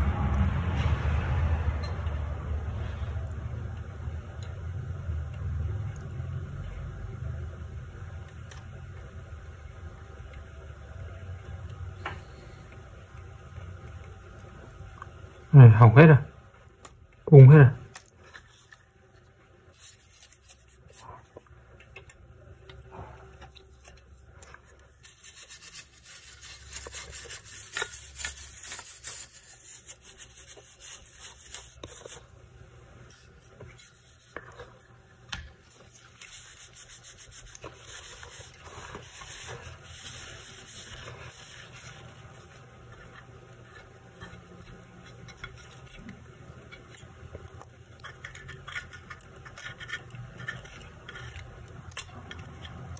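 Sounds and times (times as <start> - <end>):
rubbing and scraping on graphics card: 24.6 - 32.3, 33.1 - 35.0, 35.7 - 47.1, 48.0 - 51.6.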